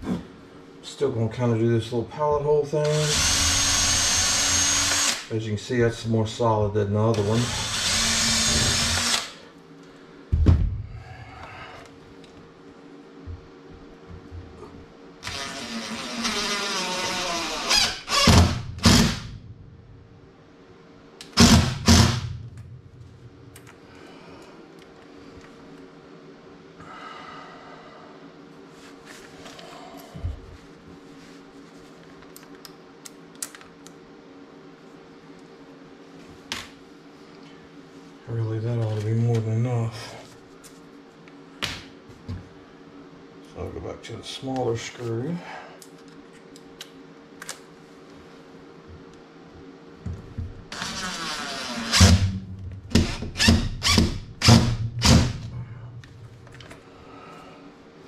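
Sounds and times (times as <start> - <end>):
steady low hum: 0.0 - 58.0
power drill driving screw: 2.9 - 5.3, 7.2 - 9.4, 15.2 - 19.3, 21.4 - 22.2, 50.7 - 52.3
low thump: 10.3 - 10.9.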